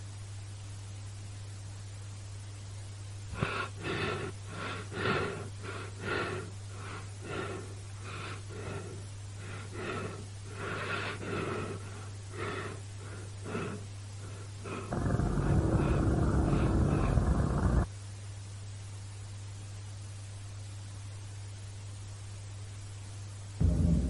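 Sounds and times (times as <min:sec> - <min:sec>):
steady low hum: 0:00.0 - 0:24.0
quick gasping breaths: 0:03.3 - 0:17.9.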